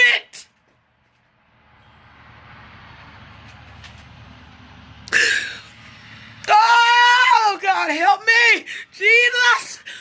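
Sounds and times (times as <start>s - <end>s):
passing vehicle rumble: 0.5s - 10.0s.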